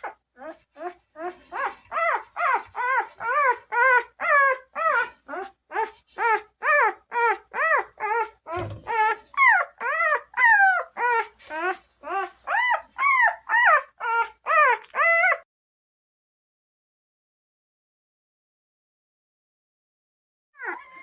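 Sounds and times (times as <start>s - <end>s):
puppy crying: 0.0s - 15.5s, 20.6s - 21.0s
low thump: 8.6s - 9.0s.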